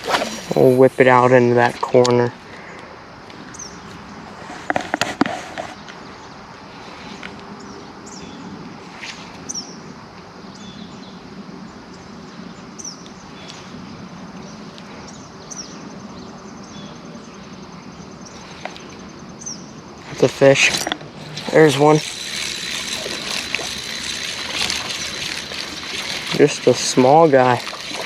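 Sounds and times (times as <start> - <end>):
steady low background hum: 9.7 - 28.0.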